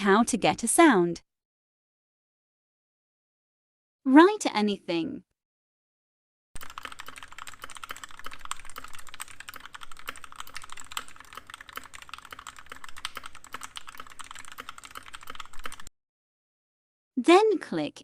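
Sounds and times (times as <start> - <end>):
keyboard typing: 6.6 - 15.9.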